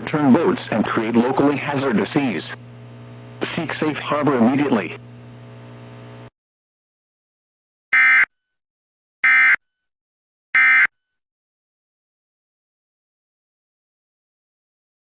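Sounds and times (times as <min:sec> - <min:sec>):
faint radio hiss and hum: 0:00.0 - 0:06.3.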